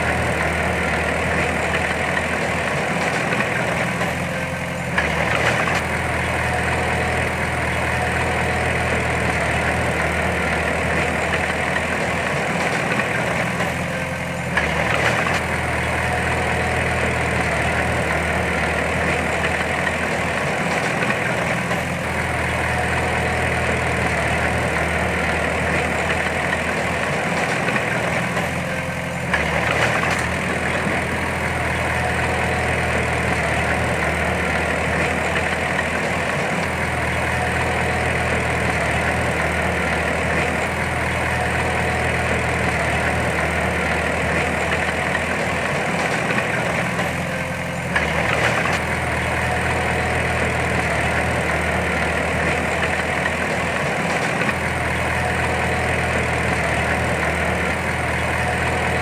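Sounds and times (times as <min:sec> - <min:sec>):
heavy diesel engine running: 0:00.0 - 0:59.0.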